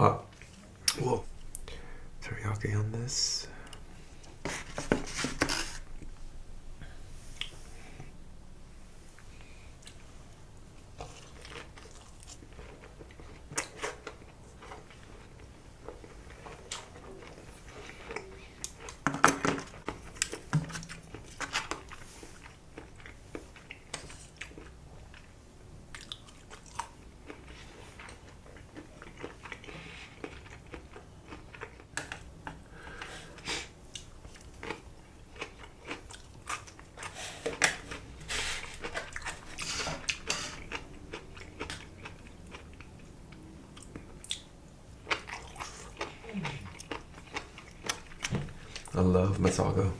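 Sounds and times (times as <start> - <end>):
person chewing food: 3.5 - 8.2, 9.1 - 49.0.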